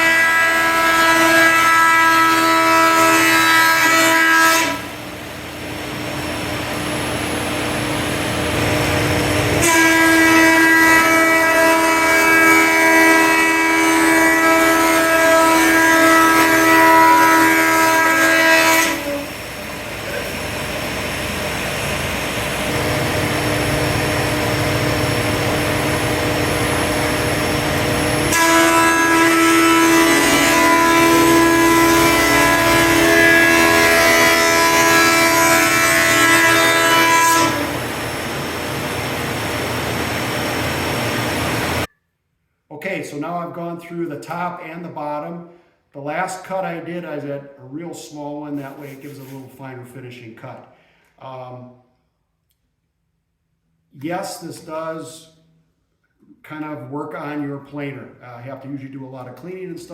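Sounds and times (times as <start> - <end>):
wood planer whining: 0.0 - 41.9.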